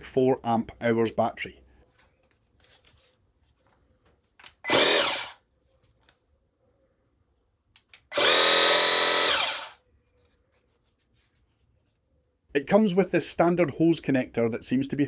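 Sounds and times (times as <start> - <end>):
pressure washer motor and pump: 4.7 - 5.3, 8.1 - 9.7.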